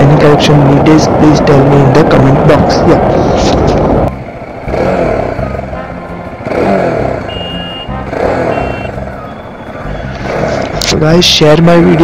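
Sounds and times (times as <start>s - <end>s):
motorcycle engine revving: 1.0s - 12.0s
short high beeps: 7.3s - 9.4s.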